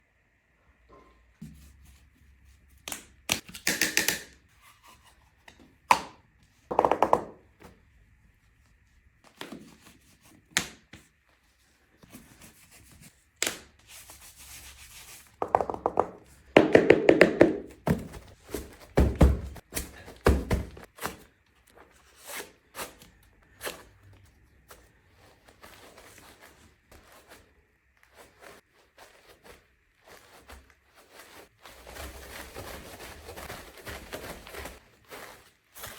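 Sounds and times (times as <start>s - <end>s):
thuds and sharp taps: 18.9s - 19.6s.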